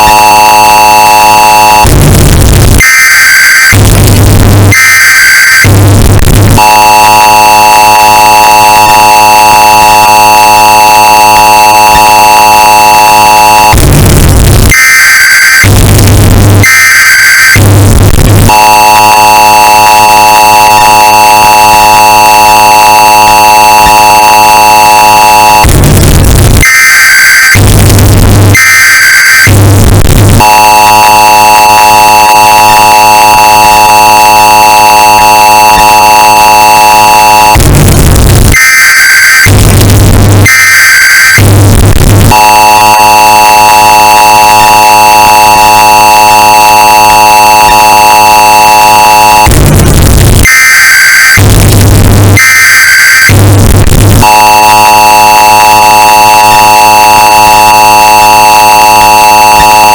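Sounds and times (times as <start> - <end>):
screeching data bursts: 0.0 - 2.1, 6.4 - 13.8, 14.6 - 25.8, 27.0 - 37.6, 42.3 - 49.6, 54.2 - 59.9
distorted two-tone alert signal: 0.0 - 59.9.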